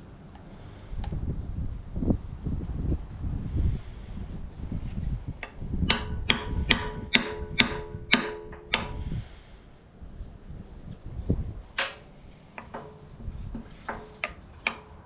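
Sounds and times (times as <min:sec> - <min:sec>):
hammer striking steel: 0:05.4 - 0:09.2, 0:11.8 - 0:15.0.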